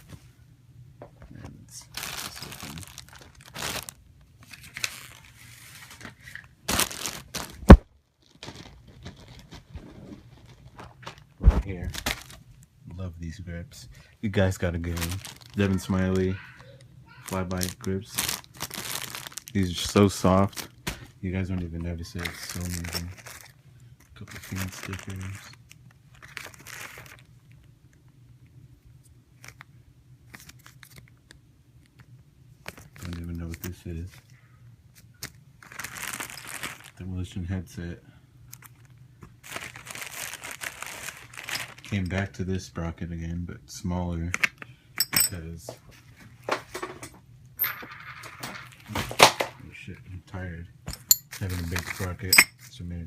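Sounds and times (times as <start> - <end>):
packaging crinkling and tearing: 1.8 - 12.4, 14.8 - 16.4, 17.2 - 21.1, 22.2 - 27.7, 29.4 - 31.4, 35.2 - 37.0, 38.5 - 42.1, 51.3 - 52.3.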